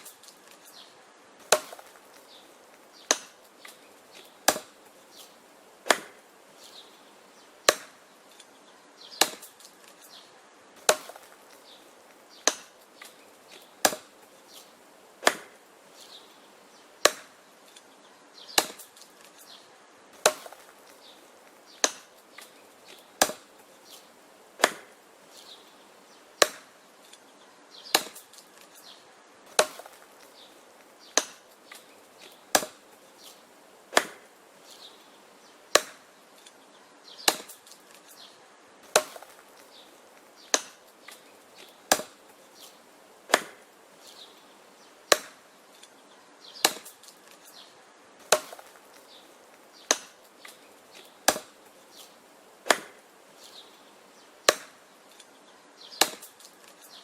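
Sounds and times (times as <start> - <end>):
axe chopping wood: 1.4 - 6.2, 7.6 - 8.5, 9.1 - 10.2, 10.8 - 15.6, 17.0 - 25.5, 26.4 - 27.2, 27.8 - 34.3, 35.7 - 36.1, 37.2 - 38.2, 38.8 - 43.7, 45.1 - 45.8, 46.6 - 47.6, 48.2 - 53.6, 54.4 - 55.2, 55.9 - 56.9.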